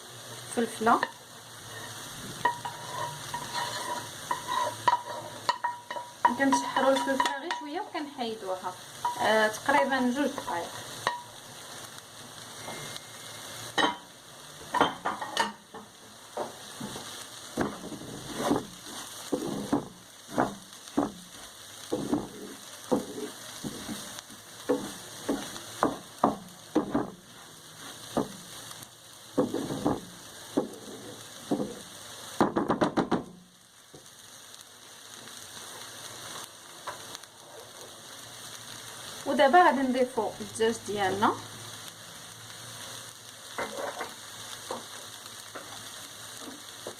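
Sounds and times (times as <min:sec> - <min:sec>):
food sizzling in oil: 0:00.0 - 0:46.9
utensil scraping and knocking pan: 0:01.0 - 0:07.7, 0:14.7 - 0:21.2, 0:21.9 - 0:24.1, 0:24.7 - 0:27.2, 0:29.4 - 0:31.8, 0:43.6 - 0:44.9.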